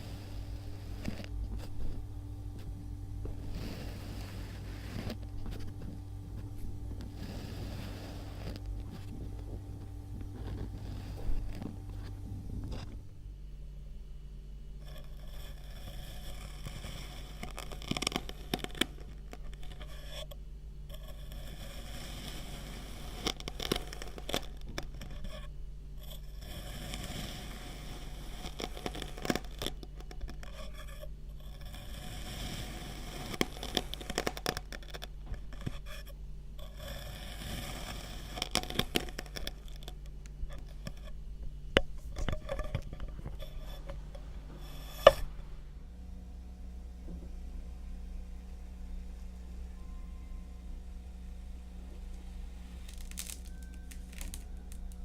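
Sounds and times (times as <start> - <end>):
tool scraping sand: 0.0 - 2.0, 2.6 - 13.0, 14.8 - 41.2
crunchy crackles: 0.0 - 13.2, 14.8 - 45.6, 52.0 - 55.0
low hum: 0.0 - 55.0.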